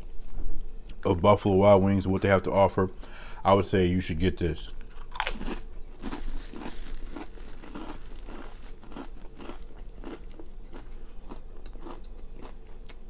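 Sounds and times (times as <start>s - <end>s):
person chewing crunchy food: 4.8s - 13.0s.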